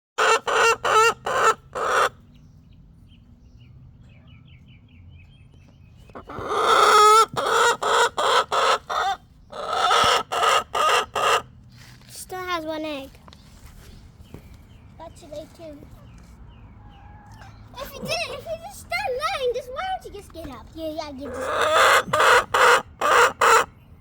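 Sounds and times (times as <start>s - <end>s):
chicken clucking: 0.2s - 2.2s, 6.0s - 11.5s, 21.2s - 23.7s
chicken squawking: 0.2s - 2.2s, 6.1s - 11.5s, 21.2s - 23.7s.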